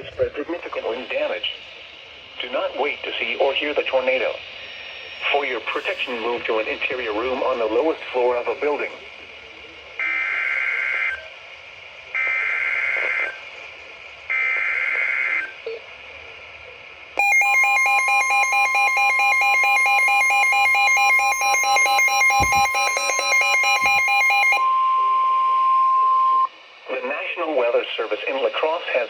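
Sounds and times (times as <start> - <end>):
digital data bursts: 0.4 - 8.9, 17.2 - 24.8
two-tone attention signal: 17.2 - 26.5.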